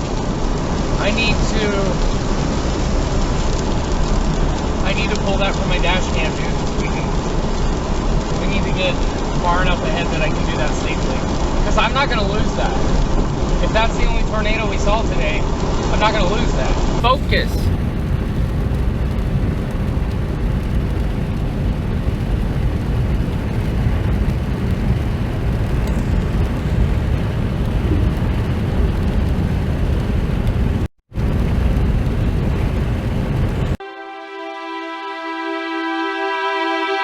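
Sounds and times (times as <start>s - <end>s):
car road and wind noise: 0.0s - 33.8s
soft music with held tones: 33.8s - 37.0s.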